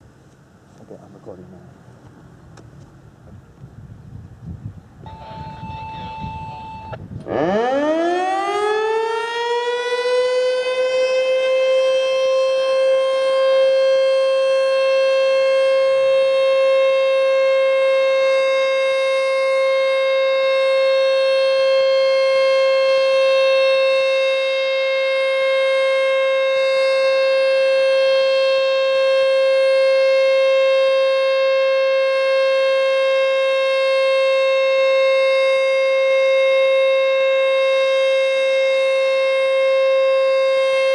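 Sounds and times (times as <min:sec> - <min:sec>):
tornado siren winding up: 0:05.1 - 0:32.2.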